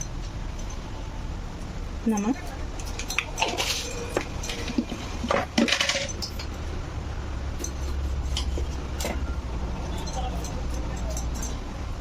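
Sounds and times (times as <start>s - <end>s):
metal spoon clinking on dish: 9.9s - 11.7s.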